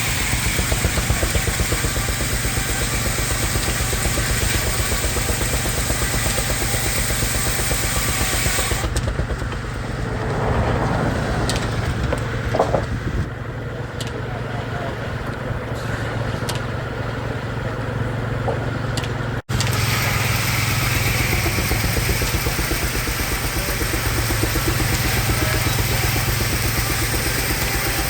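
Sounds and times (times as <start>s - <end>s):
steam engine chuffing: 0.0s - 28.0s
saw blade cutting hiss: 19.5s - 28.0s.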